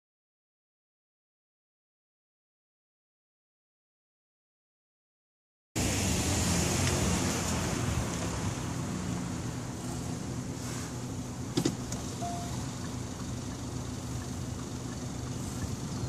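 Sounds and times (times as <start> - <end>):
car engine idling: 6.8 - 16.0
short faint beep: 12.2 - 12.7.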